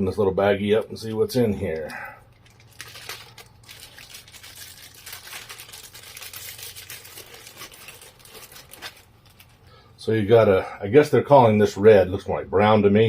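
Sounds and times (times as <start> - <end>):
plastic bag crinkling: 1.6 - 9.7.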